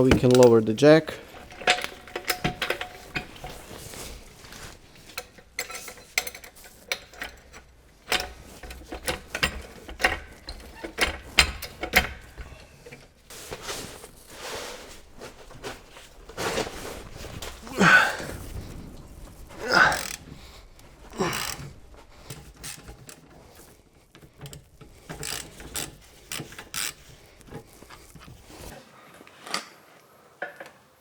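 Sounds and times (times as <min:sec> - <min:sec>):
metallic clicks and clanks of tools: 0:00.0 - 0:13.1, 0:19.8 - 0:28.4.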